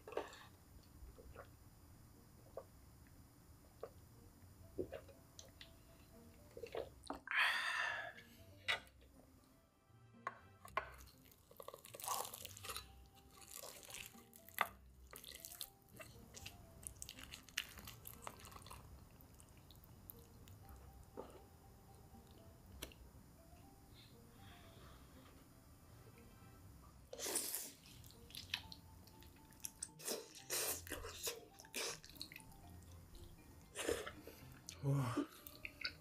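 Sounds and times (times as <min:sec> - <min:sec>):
wet chewing: 0:28.0 - 0:32.5.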